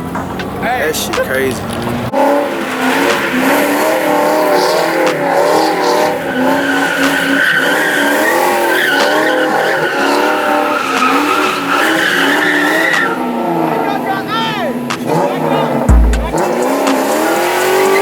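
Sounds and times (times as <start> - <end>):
car engine revving: 0.0 - 18.0
tyres squealing: 0.0 - 18.0.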